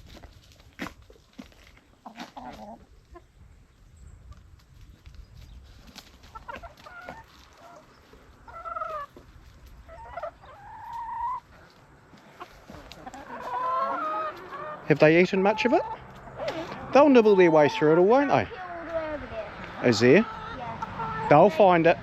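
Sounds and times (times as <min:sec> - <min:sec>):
hens clucking and calling: 0:00.0 - 0:22.0.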